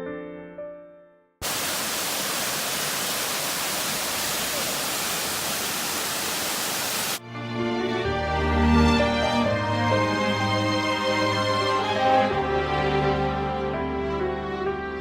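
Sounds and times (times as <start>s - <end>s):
waterfall rushing: 1.4s - 7.2s
background music: 7.2s - 15.0s.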